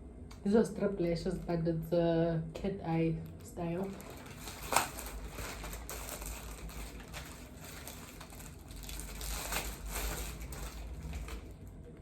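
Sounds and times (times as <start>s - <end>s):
packaging crinkling and rustling: 3.3s - 11.8s.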